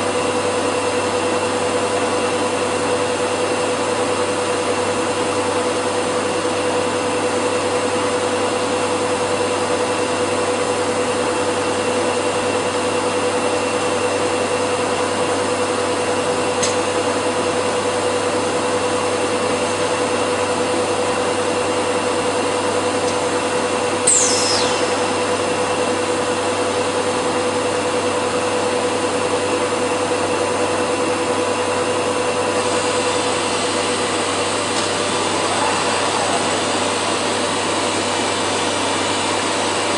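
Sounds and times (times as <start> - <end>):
router machine whine: 24.0 - 27.7
short high squeal: 24.1 - 26.5.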